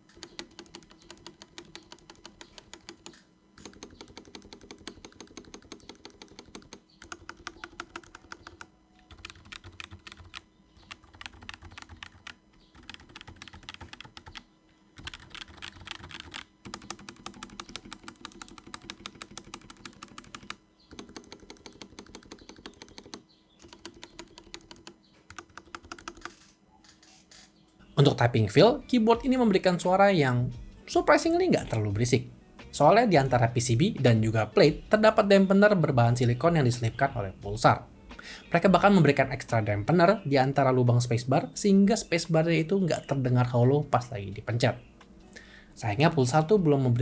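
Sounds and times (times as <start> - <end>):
typing on mechanical keyboard: 0.1 - 14.4, 15.0 - 26.5.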